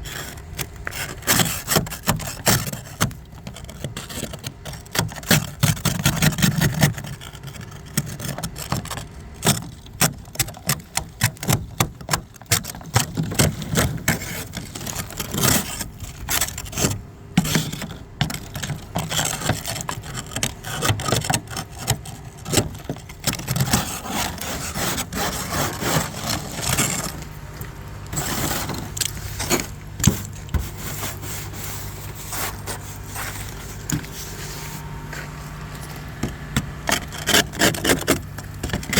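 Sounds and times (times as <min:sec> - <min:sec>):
scraping ice and crusted snow: 0:00.0 - 0:38.9
steady low hum: 0:12.4 - 0:38.9.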